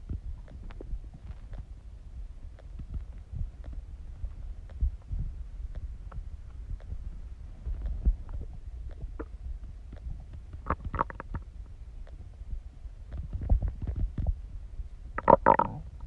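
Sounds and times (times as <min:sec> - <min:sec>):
stomach growling and gurgling: 0:07.6 - 0:12.2, 0:13.1 - 0:14.4, 0:15.1 - 0:16.0.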